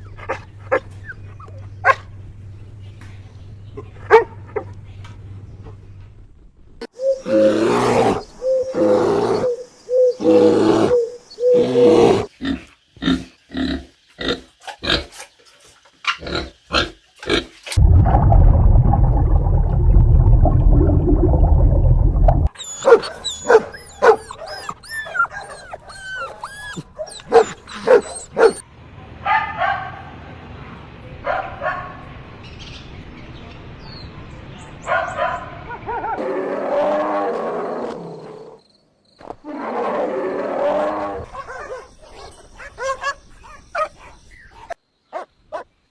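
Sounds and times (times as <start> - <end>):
loud low rumble: 17.8 - 22.5
puppies yelping and barking: 22.5 - 28.6.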